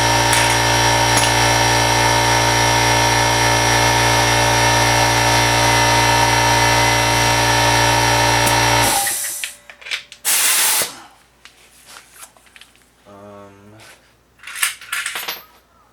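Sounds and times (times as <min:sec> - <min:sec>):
motor humming: 0:00.0 - 0:09.6.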